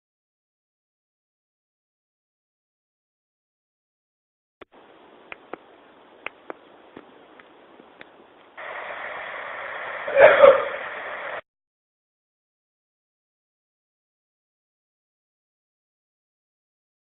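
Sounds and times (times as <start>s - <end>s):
steady recording hiss: 4.6s - 11.4s.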